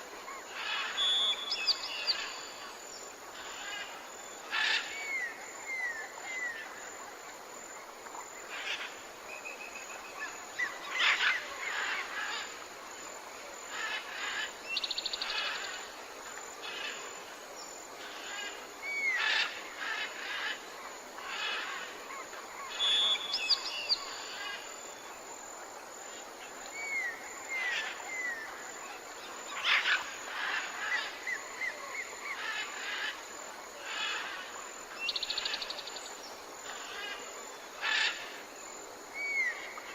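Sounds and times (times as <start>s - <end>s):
forest birds calling: 0.0s - 6.8s, 8.4s - 12.6s, 18.0s - 25.2s, 26.2s - 38.4s, 39.1s - 39.9s
steady background hiss: 0.0s - 39.9s.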